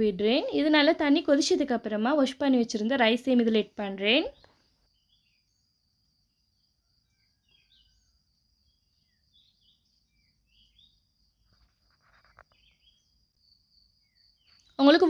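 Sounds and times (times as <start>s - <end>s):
faint bird chirps: 4.0s - 15.0s.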